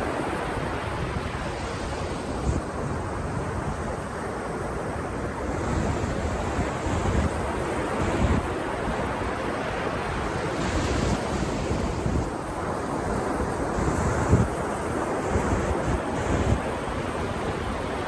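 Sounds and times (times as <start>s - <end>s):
ocean surf on beach: 0.0s - 18.0s
wind buffeting microphone: 0.0s - 18.0s.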